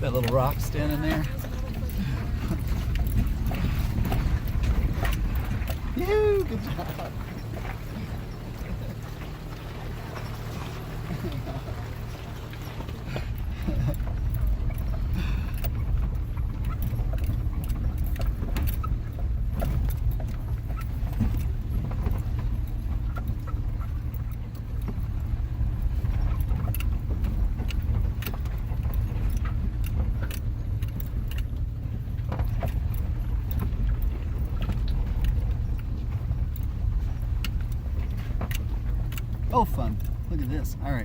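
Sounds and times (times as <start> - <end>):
vehicle engine rumble: 0.0 - 41.0
clicks and rattles: 25.8 - 41.0.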